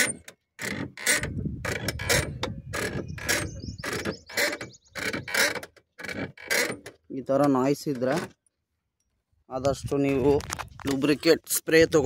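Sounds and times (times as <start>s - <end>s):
scooter suspension creaking: 0.0s - 8.4s.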